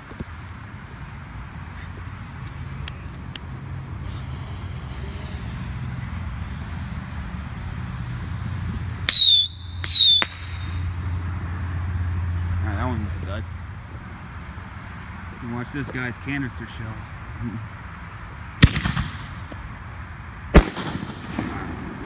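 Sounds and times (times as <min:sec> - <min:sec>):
faint distant pops: 0:08.7 - 0:11.2
whistling fireworks: 0:09.0 - 0:10.9, 0:18.6 - 0:19.6, 0:20.6 - 0:22.0.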